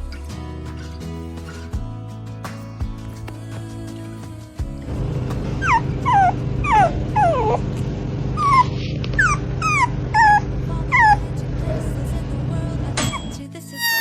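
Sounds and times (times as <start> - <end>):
puppy whimpering: 5.5 - 7.7, 8.4 - 11.3, 13.1 - 14.0.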